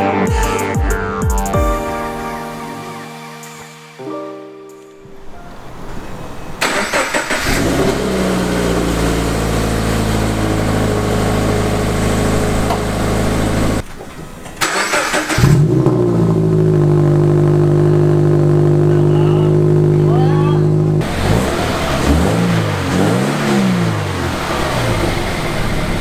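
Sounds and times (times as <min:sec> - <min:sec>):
car engine idling: 0:06.6 - 0:26.0
engine cranking: 0:06.6 - 0:26.0.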